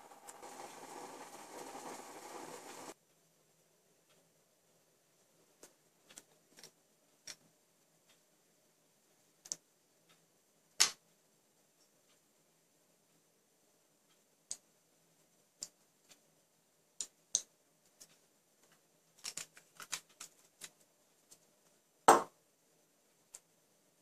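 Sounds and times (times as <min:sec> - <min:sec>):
small objects clicking and tapping: 0:05.6 - 0:07.5, 0:10.7 - 0:11.0, 0:17.0 - 0:22.3
loud knock: 0:22.1 - 0:22.3.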